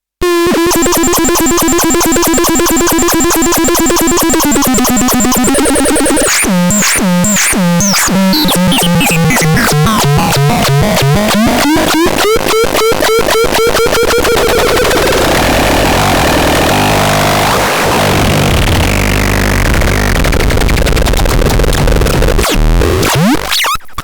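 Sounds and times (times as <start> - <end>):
buzzy pulsing synthesizer tone: 0.2 - 20.3
downward-swooping synth chirps: 0.8 - 12.1.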